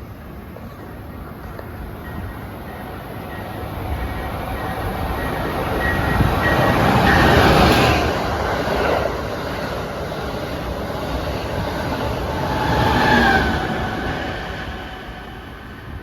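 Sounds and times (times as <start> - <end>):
train wheels rumbling on rails: 0.0 - 16.0.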